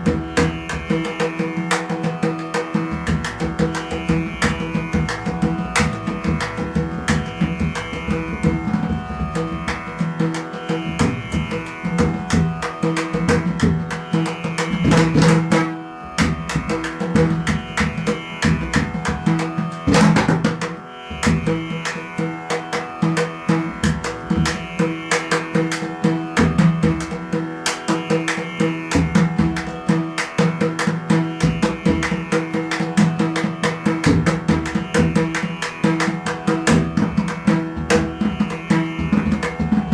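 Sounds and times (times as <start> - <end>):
held drone tone: 0.0 - 39.9
rapid hand-drum strokes: 0.0 - 39.9.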